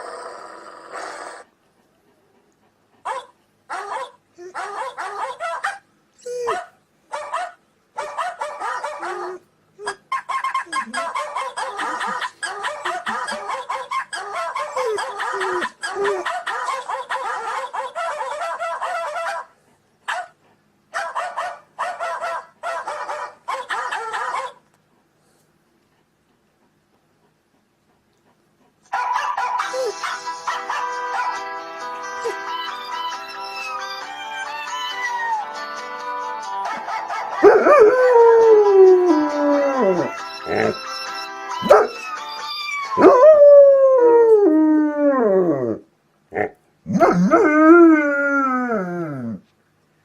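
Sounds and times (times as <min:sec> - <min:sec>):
dog barking: 0:03.1 - 0:05.9, 0:06.5 - 0:10.0, 0:11.0 - 0:19.5, 0:20.1 - 0:24.6, 0:28.9 - 0:31.4, 0:41.6 - 0:42.0.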